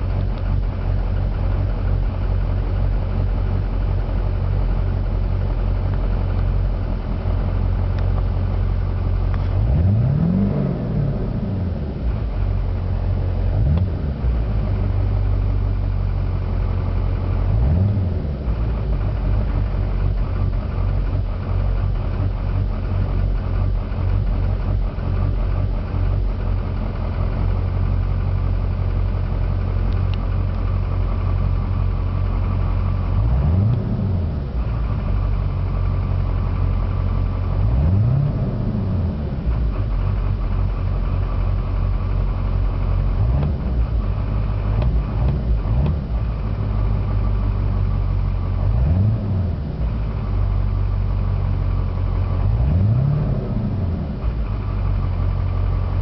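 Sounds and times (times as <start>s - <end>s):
diesel truck engine idling and revving: 0.0s - 56.0s.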